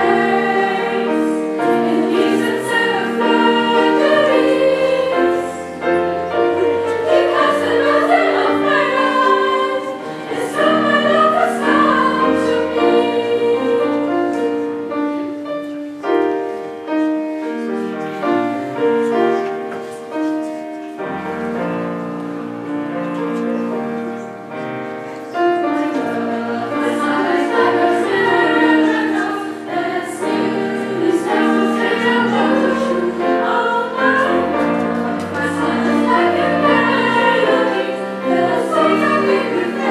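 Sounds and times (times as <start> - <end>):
choir singing: 0.0 - 15.2, 24.6 - 39.9
piano accompaniment: 0.0 - 39.9.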